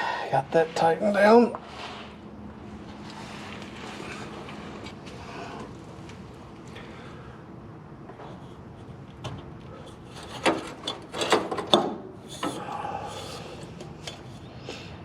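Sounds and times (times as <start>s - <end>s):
tools knocking and clattering: 10.1s - 12.7s.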